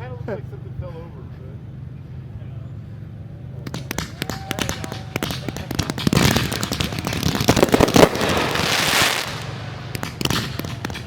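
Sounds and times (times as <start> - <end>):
fireworks cracking: 3.6 - 11.0
fireworks crackling hiss: 3.6 - 11.0.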